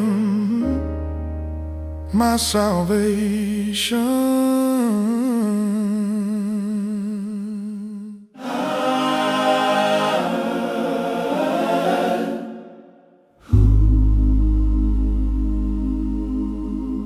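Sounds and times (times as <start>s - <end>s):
choir singing a chord: 8.4s - 17.0s
deep low tone: 13.4s - 17.0s
person humming with vibrato: 13.4s - 17.0s.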